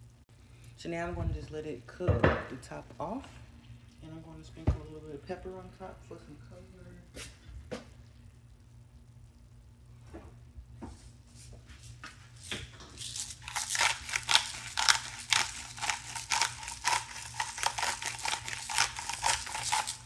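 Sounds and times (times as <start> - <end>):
pepper grinder crunching: 12.4 - 20.0.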